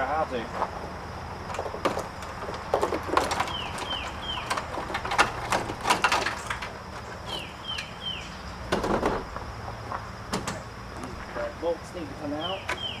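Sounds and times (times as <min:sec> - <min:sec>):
car parts knocking and clattering: 0:00.5 - 0:11.1, 0:12.4 - 0:13.0
bird chirping: 0:03.3 - 0:04.8, 0:07.0 - 0:08.7, 0:12.2 - 0:13.0.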